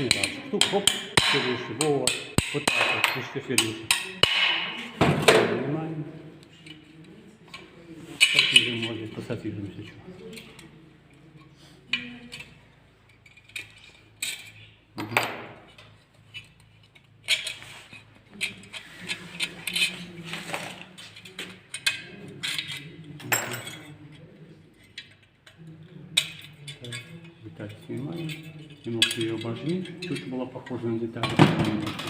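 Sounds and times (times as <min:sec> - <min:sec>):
metal parts clinking: 0:11.9 - 0:23.9.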